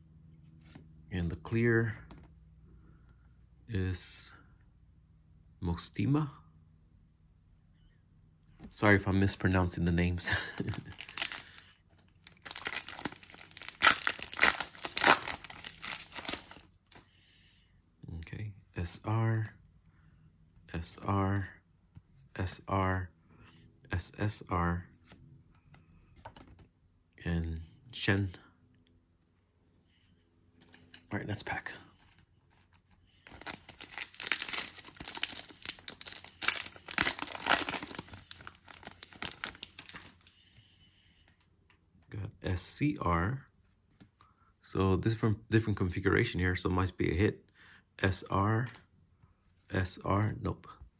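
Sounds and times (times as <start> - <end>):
card pack wrapper tearing and crinkling: 10.3 - 17.0, 33.3 - 40.3.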